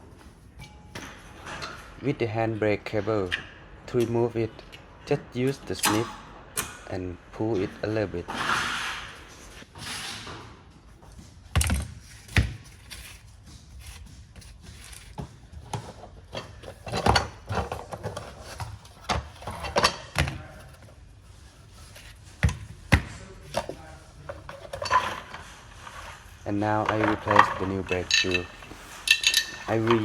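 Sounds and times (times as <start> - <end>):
pliers and brake parts knocking: 13.8 - 20.9.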